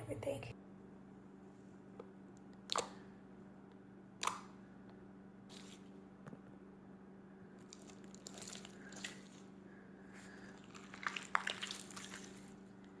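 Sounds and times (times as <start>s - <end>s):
steady low hum: 0.0s - 13.0s
faint clicks and wet crackles: 7.6s - 9.6s, 10.2s - 13.0s.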